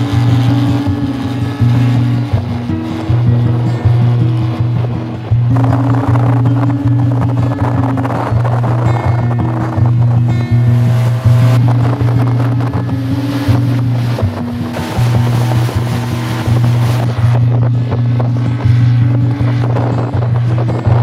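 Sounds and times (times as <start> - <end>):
music with steady bass line: 0.0 - 21.0.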